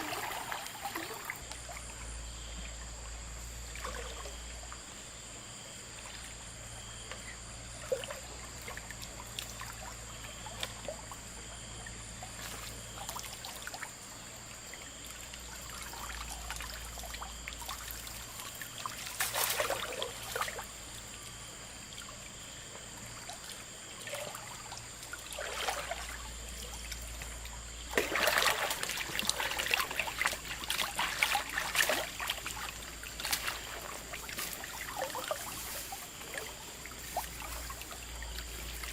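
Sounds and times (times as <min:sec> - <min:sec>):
water flowing over stones: 0:00.0 - 0:01.5, 0:26.9 - 0:38.9
water splashing: 0:00.0 - 0:02.0, 0:03.6 - 0:04.9, 0:07.8 - 0:21.3, 0:23.2 - 0:38.9.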